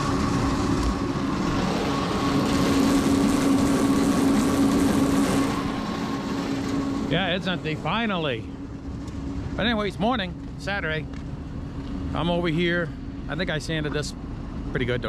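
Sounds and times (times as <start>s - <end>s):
truck engine running: 0.0s - 15.0s.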